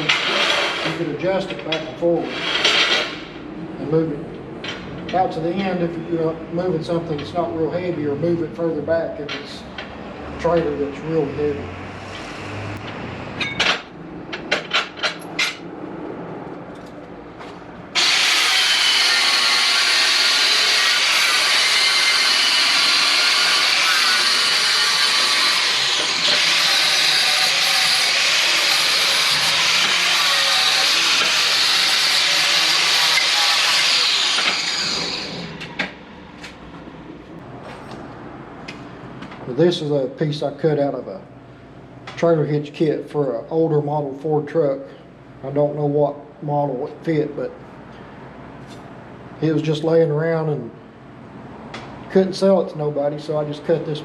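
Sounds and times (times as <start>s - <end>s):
power tool cutting metal: 0.0s - 1.0s, 17.9s - 36.0s.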